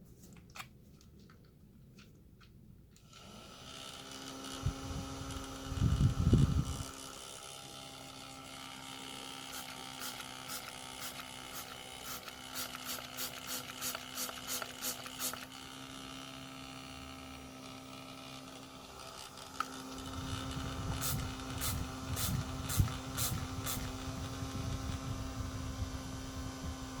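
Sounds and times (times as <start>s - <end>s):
handheld fan motor hum: 3.0s - 27.0s
water spray trigger spritzes: 9.5s - 15.5s, 21.0s - 23.9s.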